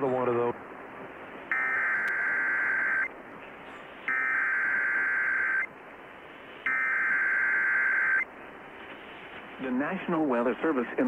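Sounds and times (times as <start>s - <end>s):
radio static hiss: 0.0s - 11.0s
buzzy warbling data squawks: 1.5s - 3.1s, 4.1s - 5.7s, 6.7s - 8.3s.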